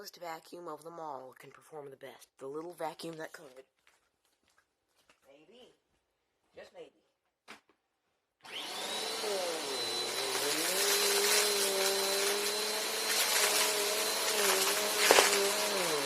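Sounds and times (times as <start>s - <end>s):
vacuum cleaner motor whine: 8.4s - 16.0s.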